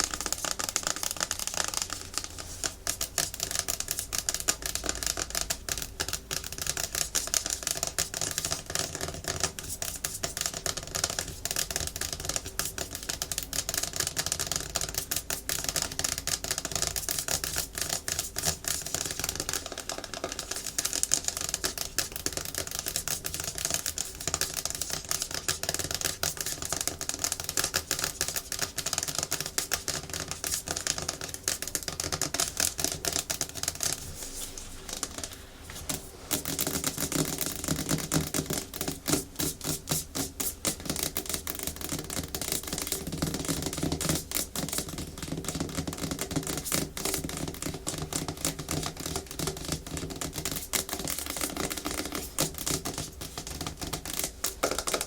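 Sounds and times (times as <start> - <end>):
fingernails tapping on plastic: 34.9 - 55.0.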